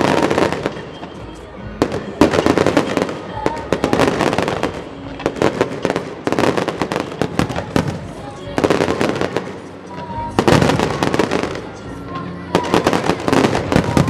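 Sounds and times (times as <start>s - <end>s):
fireworks bangs and crackles: 0.0s - 14.0s
music playing: 0.0s - 14.0s.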